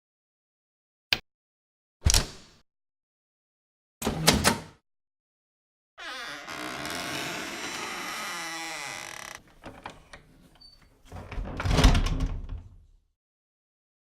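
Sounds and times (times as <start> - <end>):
door hinges creaking: 6.0 - 9.9.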